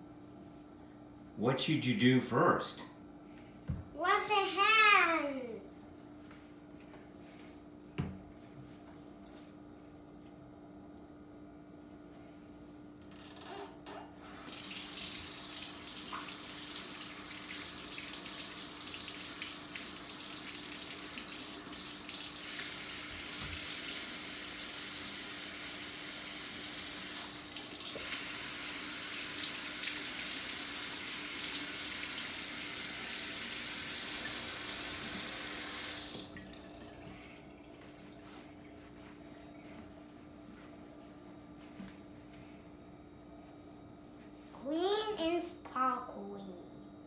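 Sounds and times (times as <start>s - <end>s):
tap water running into sink: 14.2s - 38.0s.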